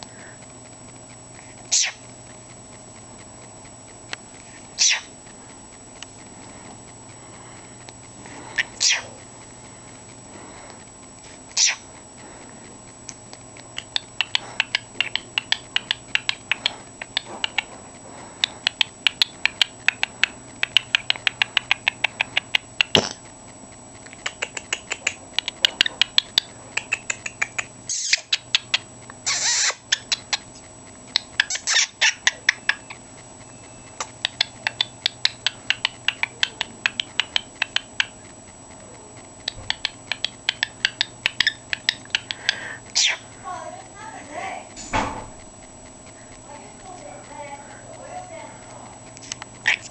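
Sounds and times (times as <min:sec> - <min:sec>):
cockatiel clicking: 0:00.0 - 0:49.9
harsh bird squawks: 0:01.7 - 0:02.0, 0:04.8 - 0:05.1, 0:08.6 - 0:09.2, 0:11.6 - 0:11.9, 0:26.8 - 0:30.5, 0:31.4 - 0:33.0, 0:39.7 - 0:43.3.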